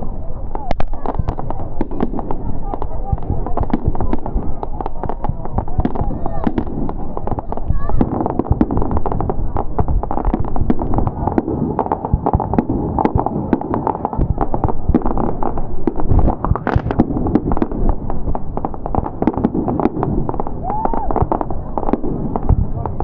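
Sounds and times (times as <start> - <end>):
fireworks bangs and crackling: 0.0 - 23.0
steady rumble: 14.2 - 20.6.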